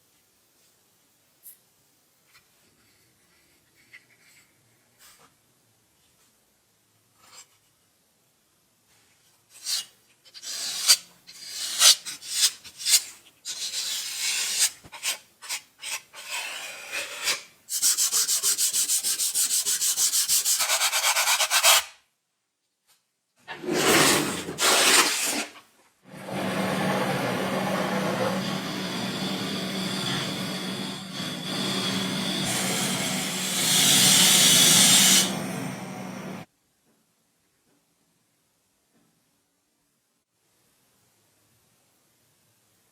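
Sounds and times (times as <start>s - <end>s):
wood being sanded by hand: 17.7s - 21.9s, 32.4s - 35.4s
machine humming: 26.1s - 36.4s.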